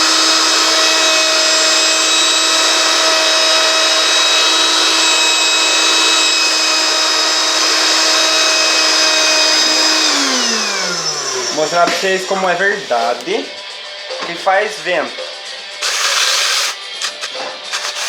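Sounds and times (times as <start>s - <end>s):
blender motor whine: 0.0s - 12.2s, 15.8s - 18.0s
hiss: 15.8s - 18.0s.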